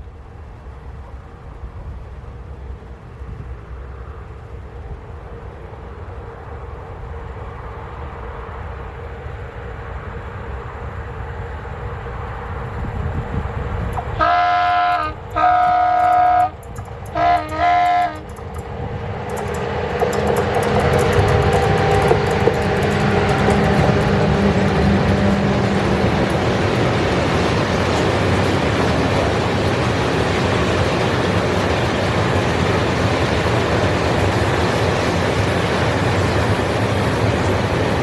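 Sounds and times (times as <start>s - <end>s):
train rumble: 0.0s - 38.0s
locomotive horn blasts: 14.0s - 18.4s
wheel clicks on rails: 15.3s - 35.5s.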